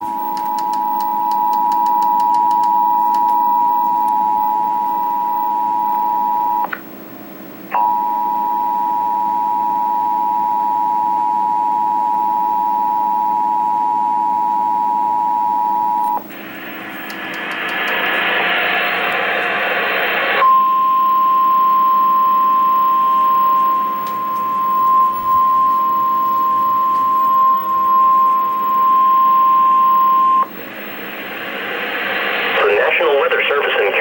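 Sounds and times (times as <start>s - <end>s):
harsh burst of noise: 16.4s - 20.4s, 31.2s - 34.0s.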